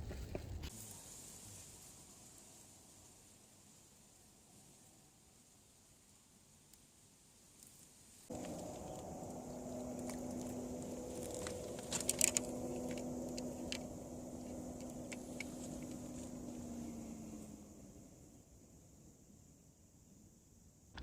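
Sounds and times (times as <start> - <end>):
light clicks and rattles: 8.3 - 16.5
low motor hum: 8.3 - 18.9.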